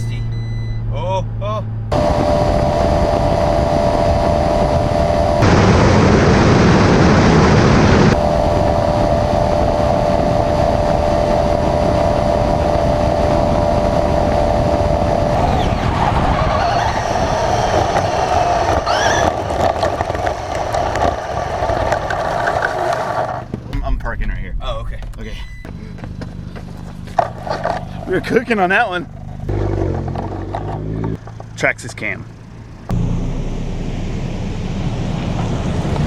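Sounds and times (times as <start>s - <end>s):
steady whine: 0.0s - 22.2s, 23.7s - 27.3s
road and wind noise: 0.0s - 36.0s
short rising whines: 0.1s - 21.3s
louder rougher rush: 1.9s - 20.8s, 23.7s - 25.7s.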